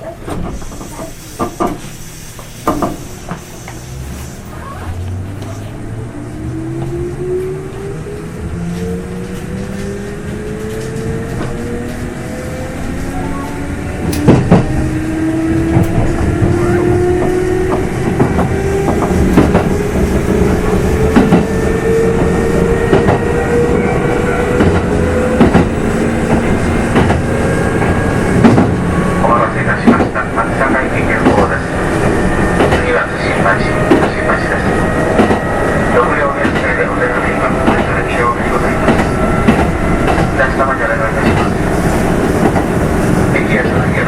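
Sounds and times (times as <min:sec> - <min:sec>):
wheels clacking over rail joints: 0:24.6 - 0:28.8, 0:38.8 - 0:40.4, 0:41.2 - 0:41.6.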